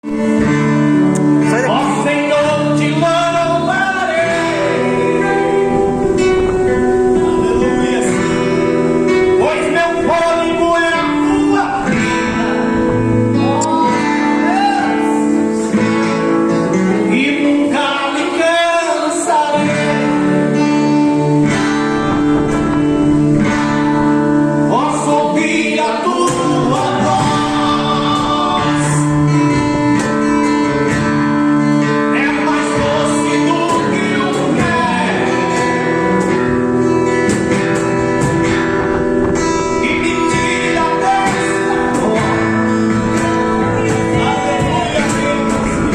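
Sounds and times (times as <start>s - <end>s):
guitar accompaniment: 0.0s - 45.9s
person singing: 1.1s - 30.9s, 31.7s - 45.9s.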